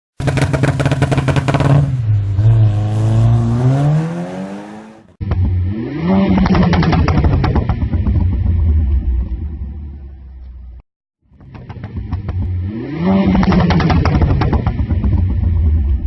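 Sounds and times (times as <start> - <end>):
exhaust pops and crackles: 0.2 - 1.9, 6.4 - 9.4, 11.3 - 12.6, 13.3 - 16.0
car engine revving: 0.2 - 9.0, 11.4 - 16.0.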